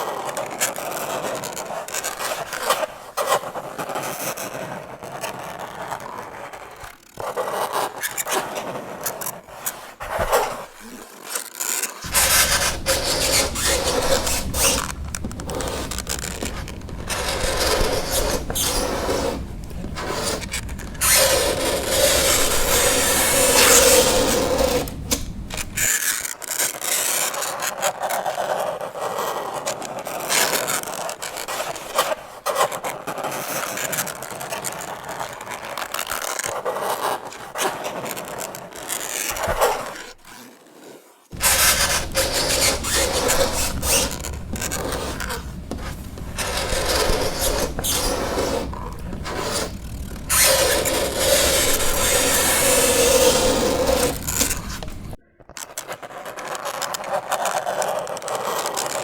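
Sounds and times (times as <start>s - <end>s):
fingernails scraping chalkboard: 12.0s - 26.0s, 36.5s - 58.9s.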